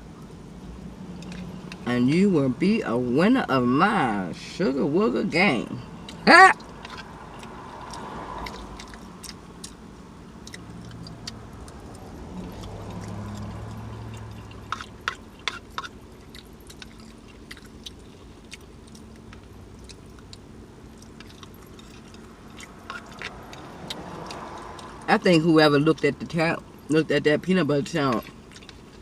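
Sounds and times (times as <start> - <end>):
low steady hum: 0.0 - 29.0
person chewing: 1.1 - 1.8, 6.0 - 25.1, 28.1 - 29.0
wet lip smacks: 10.4 - 13.8.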